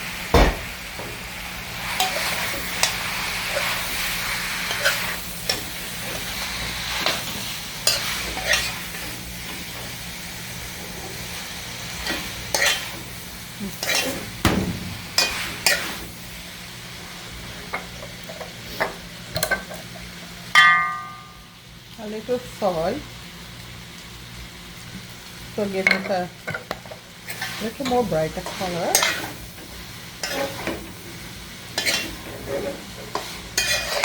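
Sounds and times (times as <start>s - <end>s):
noodles sizzling in a pot: 0.0s - 34.0s
utensil scraping against a pot: 7.8s - 8.8s, 12.0s - 13.0s, 13.6s - 14.4s, 27.3s - 29.4s, 30.2s - 30.8s, 31.8s - 34.0s
metal clang: 14.1s - 15.9s, 20.6s - 21.4s.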